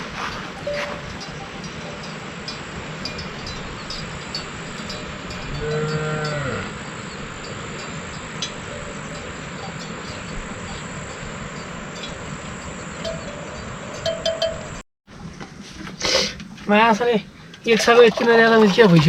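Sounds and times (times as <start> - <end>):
steady background hiss: 0.0 - 19.0
cow mooing: 0.7 - 14.7.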